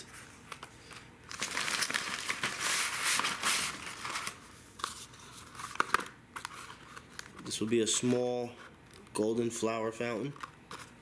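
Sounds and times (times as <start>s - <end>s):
packaging crinkling and rustling: 0.1s - 9.2s.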